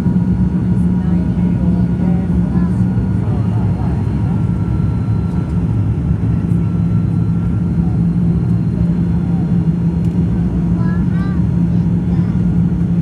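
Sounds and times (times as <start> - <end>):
airliner engine drone: 0.0 - 13.0
faint steady whine: 2.1 - 11.2.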